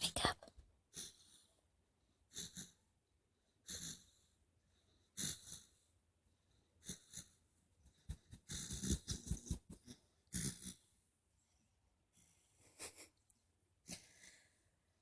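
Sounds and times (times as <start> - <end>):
puppy snoring: 0.9 - 1.5, 2.3 - 2.9, 3.6 - 4.3, 5.0 - 5.9, 6.8 - 11.0
snorts and clicks: 8.1 - 10.8.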